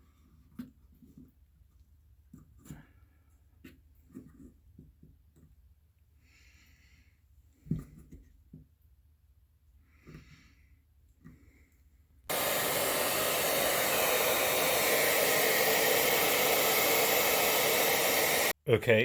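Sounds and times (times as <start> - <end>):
faint breathing: 6.2 - 7.6, 9.8 - 12.0
hair dryer blowing: 12.3 - 18.6.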